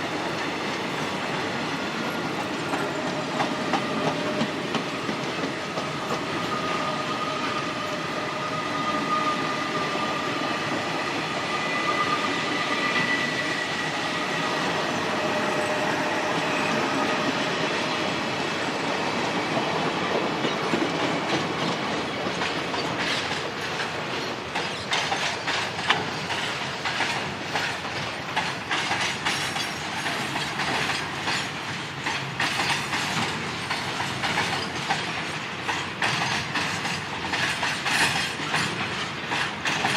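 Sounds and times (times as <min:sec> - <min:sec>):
train rumble and wheel noise: 0:00.0 - 0:39.9
wheels clattering over rail joints: 0:20.1 - 0:39.9.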